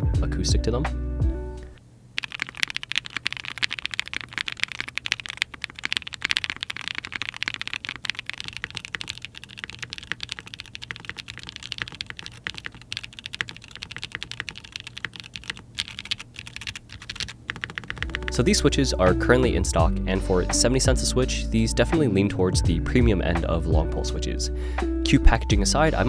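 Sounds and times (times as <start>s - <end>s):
mechanical keyboard typing: 2.2s - 19.2s.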